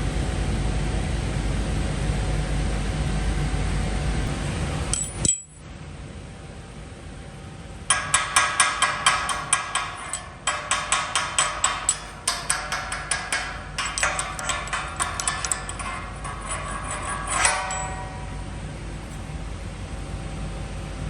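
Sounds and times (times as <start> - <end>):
hammer striking metal: 4.9 - 5.6, 7.9 - 19.2.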